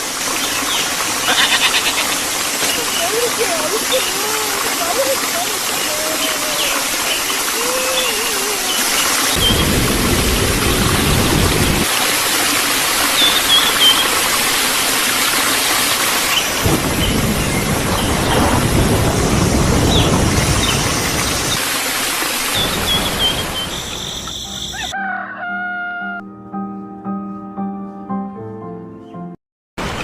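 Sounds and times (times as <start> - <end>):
high chirps: 23.0 - 24.9.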